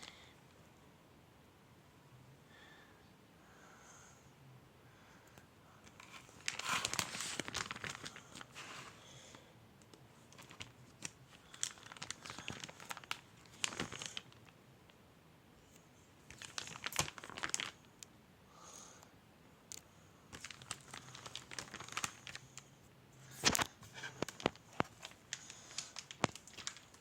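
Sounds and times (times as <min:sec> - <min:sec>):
crinkling and rustling: 0:05.8 - 0:14.6, 0:15.7 - 0:17.9, 0:19.7 - 0:22.6, 0:23.2 - 0:27.0.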